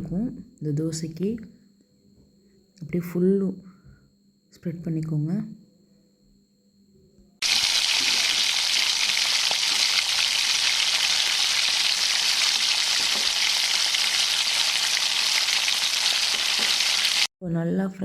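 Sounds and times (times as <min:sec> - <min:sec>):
batter sizzling on griddle: 0:07.4 - 0:17.3.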